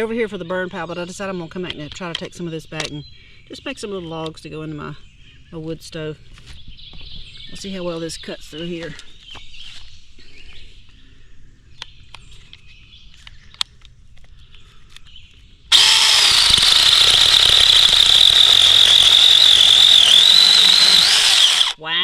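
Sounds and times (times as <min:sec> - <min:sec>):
mini chainsaw whining: 0:15.7 - 0:21.8.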